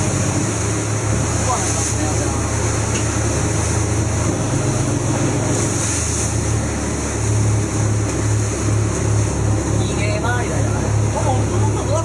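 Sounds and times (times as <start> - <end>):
boat engine droning: 0.0 - 12.0
rush of wind and water: 0.0 - 12.0.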